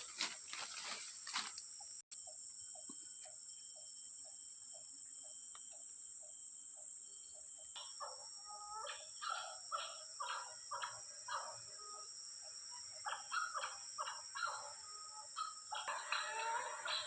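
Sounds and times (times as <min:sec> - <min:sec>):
high insect drone: 0:00.0 - 0:17.0
clucking animal calls: 0:07.7 - 0:17.0.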